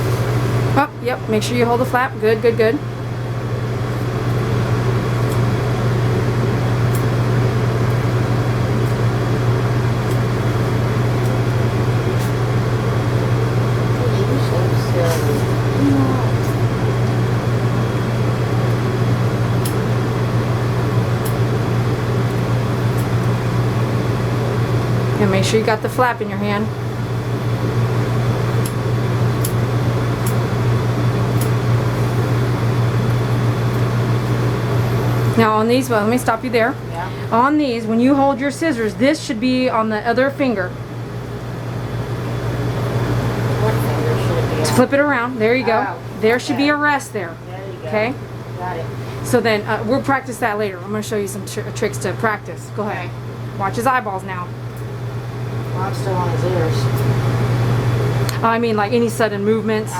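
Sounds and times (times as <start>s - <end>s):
machine hum with rushing air: 0.0s - 59.9s
grooming shears snipping: 14.0s - 16.8s.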